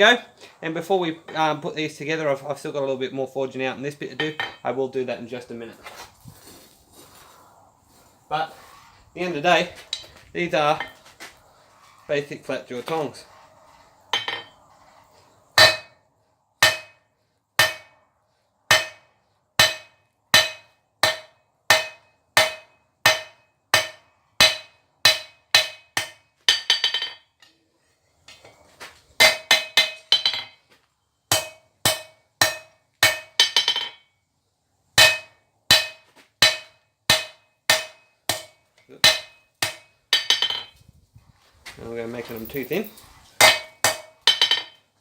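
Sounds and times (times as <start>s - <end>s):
hammer striking steel on anvil: 14.1s - 14.5s, 15.6s - 16.0s, 16.6s - 17.0s, 17.6s - 18.0s, 18.7s - 27.6s, 29.2s - 30.6s, 31.3s - 34.0s, 35.0s - 40.7s, 43.4s - 44.8s.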